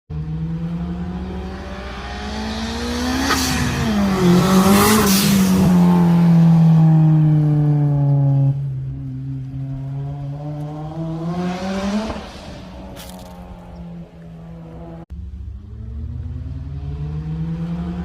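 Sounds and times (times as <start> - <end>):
turbocharged car engine accelerating: 0.1 - 18.0.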